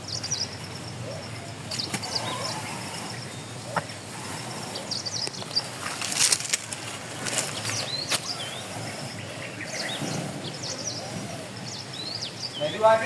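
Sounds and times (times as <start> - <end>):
small birds chirping: 0.0 - 13.0
clicks and rustles: 5.2 - 8.3.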